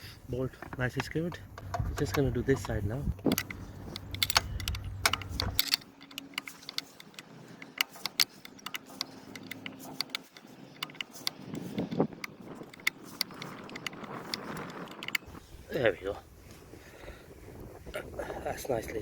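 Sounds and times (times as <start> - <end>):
low background hum: 0.0 - 19.0
metallic clicks of allen key: 0.6 - 15.3.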